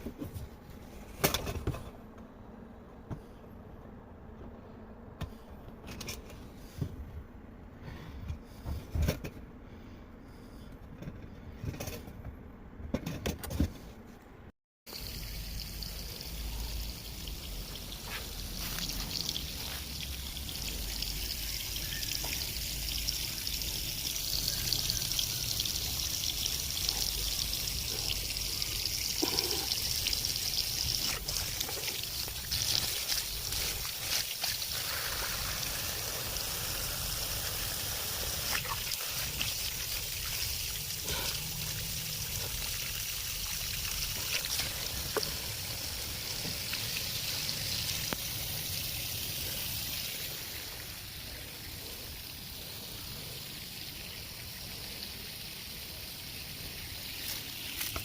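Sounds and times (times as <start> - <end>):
water running and splashing: 14.9 - 58.0.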